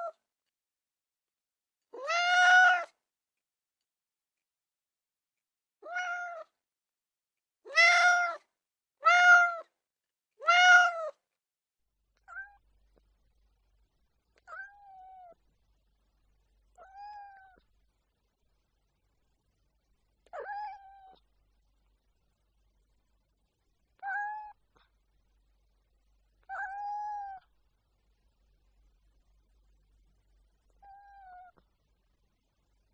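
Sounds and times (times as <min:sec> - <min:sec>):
cat meowing: 0:02.0 - 0:03.0, 0:05.8 - 0:06.5, 0:07.7 - 0:08.4, 0:09.0 - 0:09.7, 0:10.4 - 0:11.2, 0:12.2 - 0:12.6, 0:14.4 - 0:15.4, 0:16.8 - 0:17.6, 0:20.2 - 0:21.2, 0:24.0 - 0:24.6, 0:26.4 - 0:27.5, 0:30.8 - 0:31.6.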